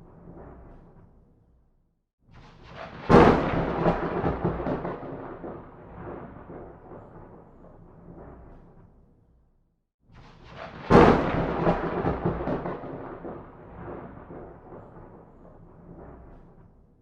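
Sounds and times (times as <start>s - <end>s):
thunderclap rumbling and cracking: 2.6s - 9.1s, 10.4s - 17.0s.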